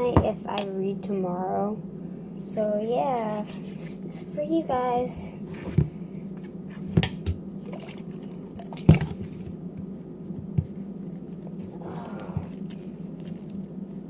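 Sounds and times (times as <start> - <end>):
steady low hum: 0.0 - 14.0
slime squishing: 10.6 - 14.0.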